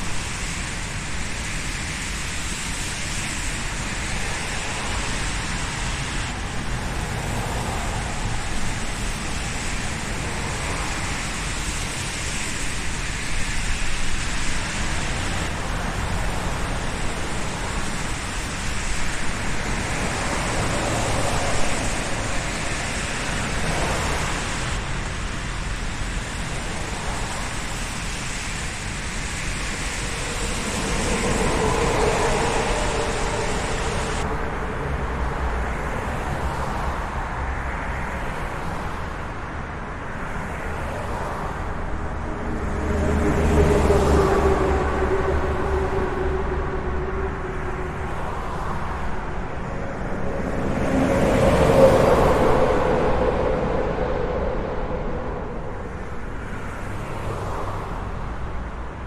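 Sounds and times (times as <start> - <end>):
road traffic noise: 0.0 - 59.0
vehicle passing close: 28.6 - 36.9, 41.0 - 58.3.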